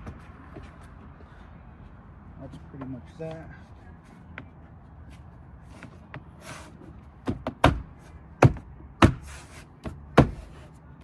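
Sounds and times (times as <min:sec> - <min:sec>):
sharp knocks on door panel: 0:07.2 - 0:10.4.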